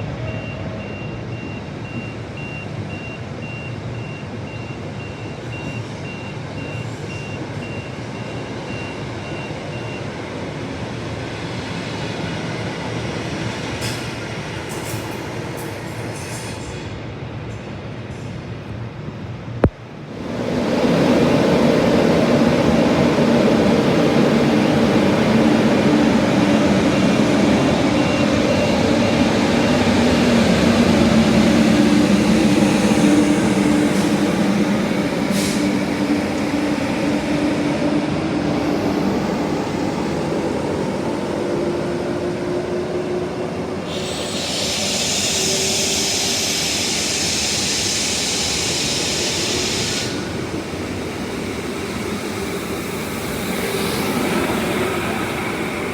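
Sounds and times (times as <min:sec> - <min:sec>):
electric train rumbling: 0:00.0 - 0:55.9
high hiss: 0:43.8 - 0:55.9.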